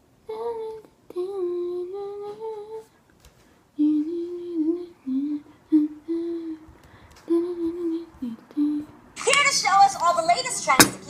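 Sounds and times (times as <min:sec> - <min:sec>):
person humming: 0:03.8 - 0:09.0.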